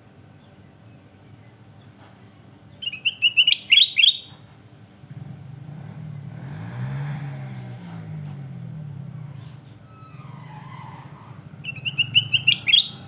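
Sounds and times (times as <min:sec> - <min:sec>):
bulbul chirping song: 0:02.7 - 0:04.5, 0:11.6 - 0:13.0.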